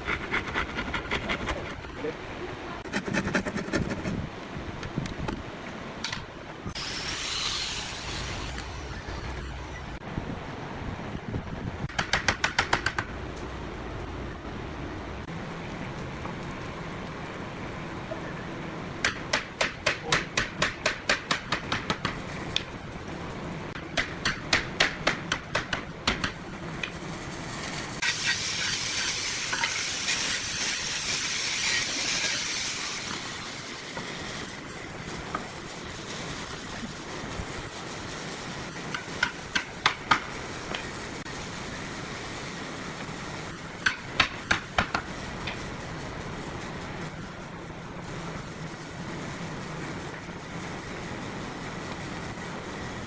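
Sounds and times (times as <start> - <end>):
steady hiss: 6.6 - 10.3, 26.1 - 53.0.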